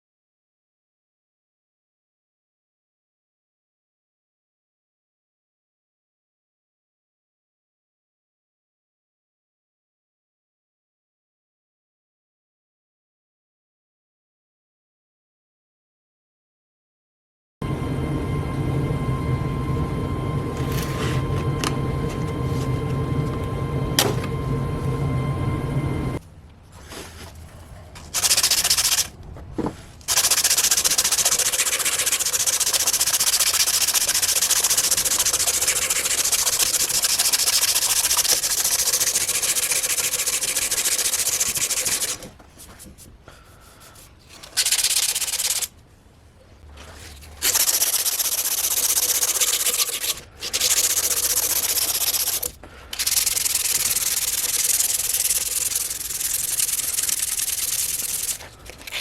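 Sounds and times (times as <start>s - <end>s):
sanding scratchy hiss: 28.0s - 29.1s, 30.1s - 42.8s, 43.6s - 45.7s, 47.4s - 58.5s.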